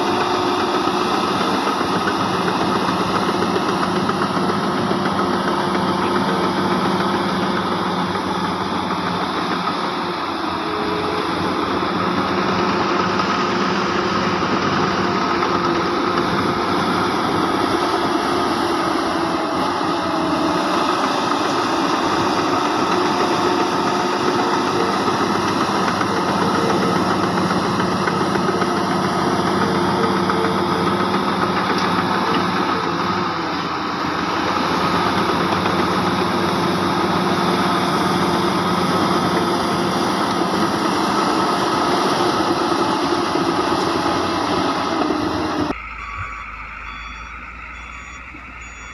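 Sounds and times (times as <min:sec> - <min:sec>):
heavy machinery diesel engine running: 0:00.0 - 0:48.9.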